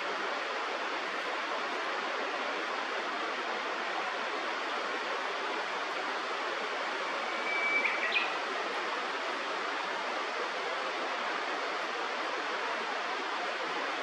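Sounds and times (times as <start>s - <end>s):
river water rushing: 0.0s - 14.0s
bird whistle call: 7.3s - 8.3s.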